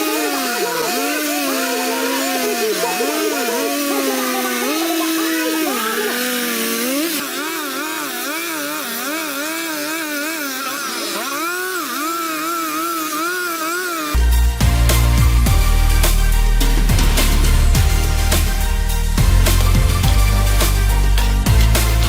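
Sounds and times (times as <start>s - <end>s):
chainsaw cutting: 0.0s - 22.0s.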